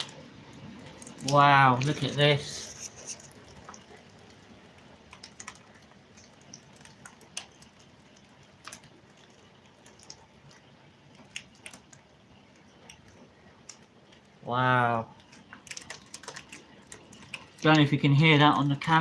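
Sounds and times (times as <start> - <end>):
heavy rain hiss: 0.0 - 3.4
hailstones ticking: 0.8 - 14.4, 15.0 - 19.0.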